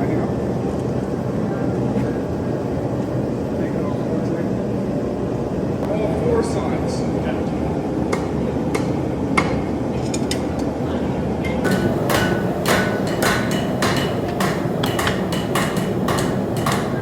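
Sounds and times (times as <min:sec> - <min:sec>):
steady background noise: 0:00.0 - 0:17.0
hammer striking steel on anvil: 0:11.7 - 0:17.0.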